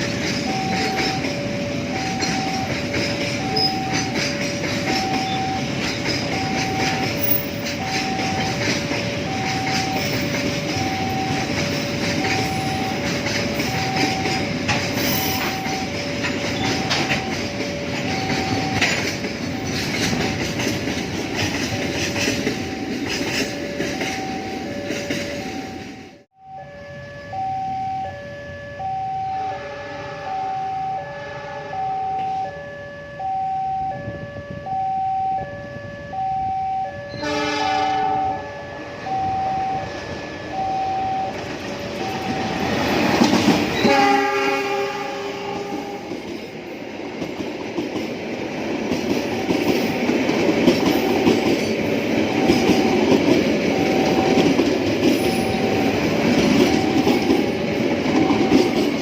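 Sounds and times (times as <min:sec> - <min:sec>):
train rumble and wheel clatter: 0:00.0 - 0:26.4, 0:29.4 - 0:59.0
train horn: 0:29.3 - 0:33.2, 0:37.0 - 0:39.2, 0:43.8 - 0:46.2.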